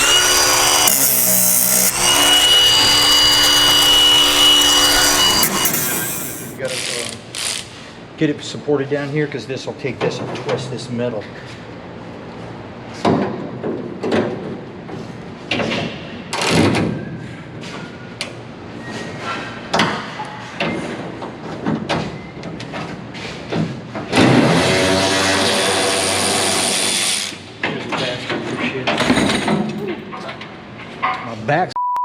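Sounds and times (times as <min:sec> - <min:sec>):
power tool whirring: 0:00.0 - 0:07.7, 0:24.4 - 0:27.4.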